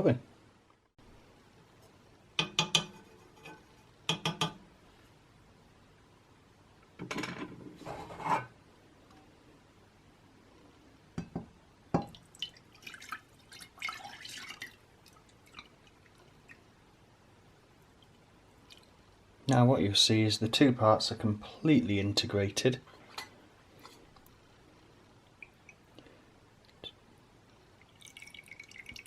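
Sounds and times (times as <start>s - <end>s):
liquid dripping: 12.0s - 16.7s, 17.9s - 19.1s, 25.0s - 26.8s, 27.5s - 29.0s
liquid pouring into glass jar: 12.1s - 16.6s, 27.8s - 29.0s.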